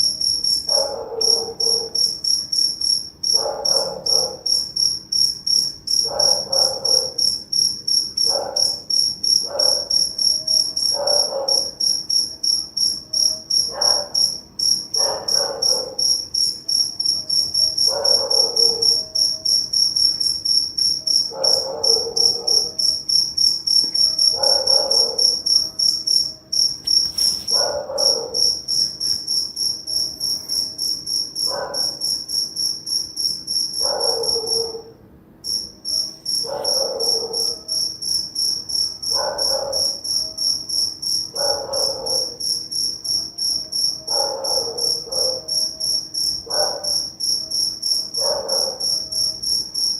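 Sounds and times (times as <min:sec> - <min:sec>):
crickets chirping: 0:00.0 - 0:49.9
dog barking: 0:00.7 - 0:02.1, 0:03.3 - 0:04.6, 0:06.0 - 0:07.3, 0:08.2 - 0:10.1, 0:10.8 - 0:11.9, 0:13.2 - 0:14.3, 0:14.9 - 0:16.3, 0:17.6 - 0:19.3, 0:21.2 - 0:22.9, 0:23.8 - 0:26.0, 0:27.0 - 0:28.7, 0:31.4 - 0:32.2, 0:33.8 - 0:35.0, 0:36.0 - 0:37.8, 0:39.1 - 0:40.2, 0:41.3 - 0:42.4, 0:44.0 - 0:45.8, 0:46.4 - 0:47.2, 0:48.1 - 0:49.3.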